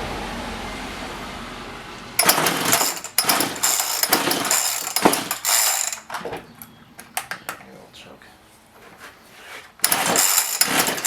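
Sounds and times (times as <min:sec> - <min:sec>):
chainsaw recoil starter pulls: 0:02.2 - 0:07.7, 0:09.8 - 0:11.0.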